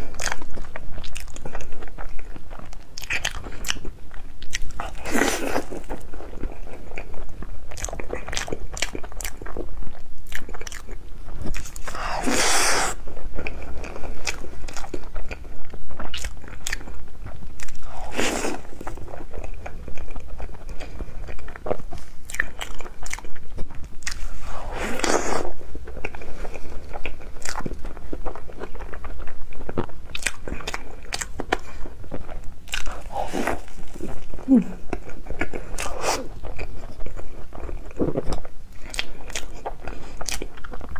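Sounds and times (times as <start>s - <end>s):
chewing with sharp clicks: 0.0s - 12.0s, 12.8s - 24.2s, 25.0s - 33.1s, 33.9s - 40.9s
louder eating bursts: 11.5s - 13.1s.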